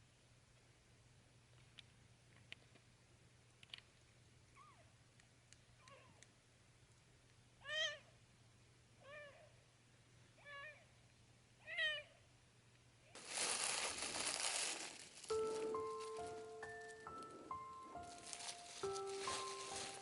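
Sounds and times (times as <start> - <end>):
piano music: 13.3 - 20.0.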